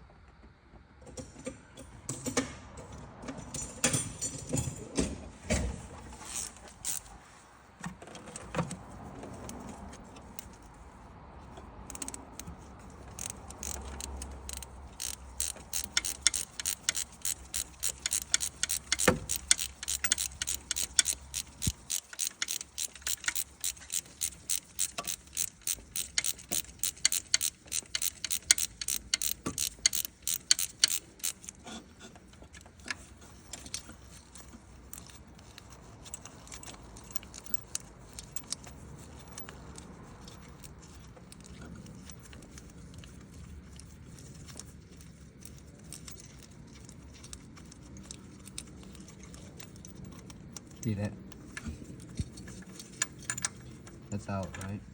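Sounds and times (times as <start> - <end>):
ratchet wrench clicking: 6.6 - 7.1, 11.8 - 31.6, 32.5 - 42.7, 43.7 - 54.7.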